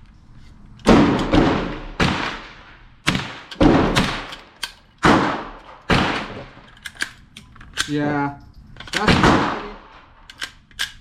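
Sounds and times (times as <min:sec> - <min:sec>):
gunshots with echo: 0:09.0 - 0:10.1.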